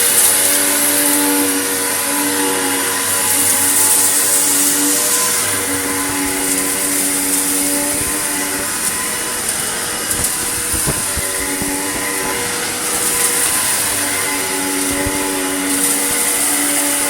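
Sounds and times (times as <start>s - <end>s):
vacuum cleaner running: 0.0s - 17.0s
grit ticking and crackling: 3.8s - 16.4s.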